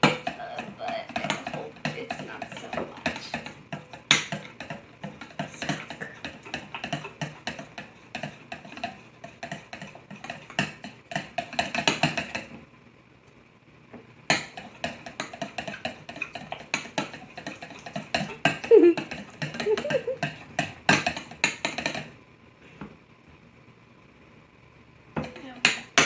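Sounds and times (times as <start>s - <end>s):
utensil scraping mixing bowl: 0.0s - 12.6s, 14.3s - 22.2s.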